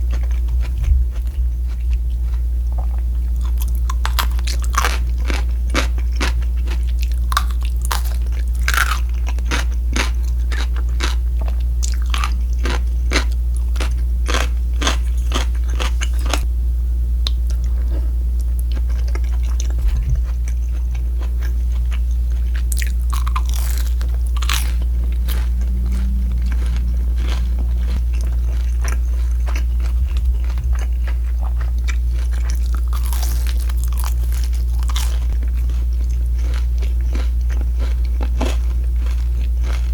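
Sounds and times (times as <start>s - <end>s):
crunching bites of fried pork: 0.0s - 16.4s, 18.6s - 25.4s, 26.7s - 39.9s
steady low hum: 0.0s - 39.9s
quiet chewing: 17.3s - 39.9s.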